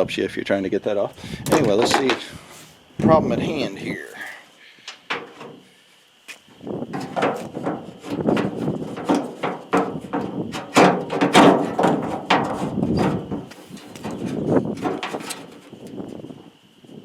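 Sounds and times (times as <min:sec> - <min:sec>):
knocks and clatters on tailgate: 0:05.0 - 0:05.6, 0:06.9 - 0:15.9.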